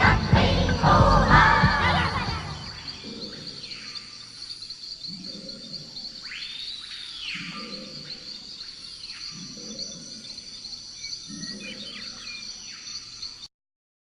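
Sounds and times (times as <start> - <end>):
low rumble: 0.0 - 3.0
bird-like calls: 0.0 - 3.9
insect chorus chirring: 0.0 - 13.5.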